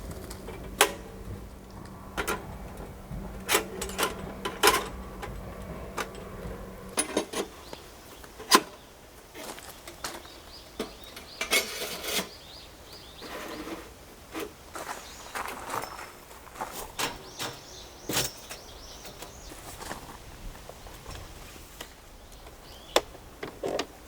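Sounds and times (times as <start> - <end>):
low steady hum: 0.0 - 9.1.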